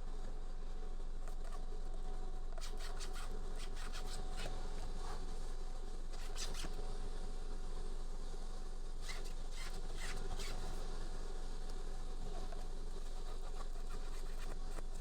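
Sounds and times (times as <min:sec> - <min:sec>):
faint steady hum: 0:00.0 - 0:15.0
hands rubbing steering wheel: 0:12.5 - 0:15.0.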